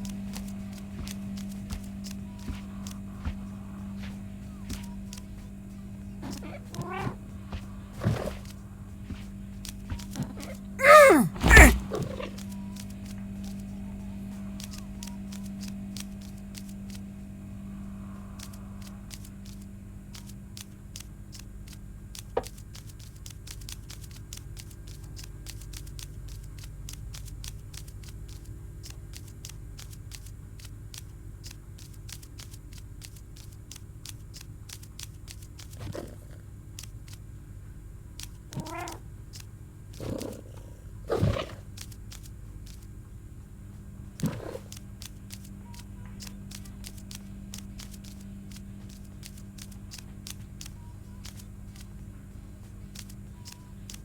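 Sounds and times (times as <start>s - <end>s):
cat meowing: 10.3s - 11.8s, 38.5s - 39.0s
faint regular clicks: 18.4s - 36.1s, 36.7s - 37.3s, 44.6s - 52.0s.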